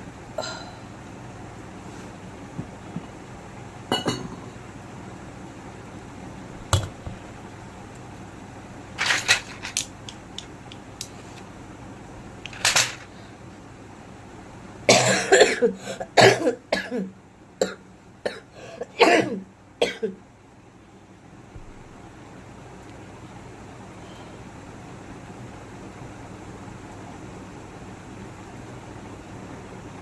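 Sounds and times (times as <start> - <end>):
woman coughing: 3.9 - 4.3, 14.9 - 20.2.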